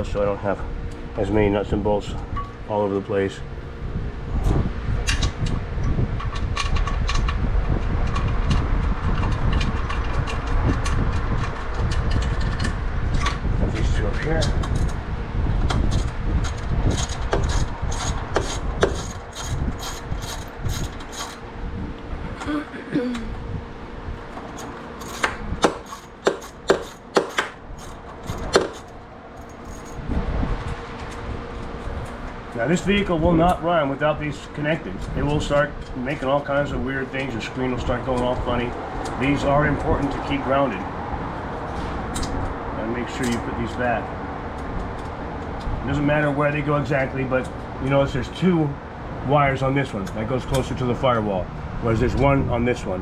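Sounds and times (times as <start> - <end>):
steady low rumble: 0.0 - 53.0
metal tools clicking and clinking: 24.5 - 30.0.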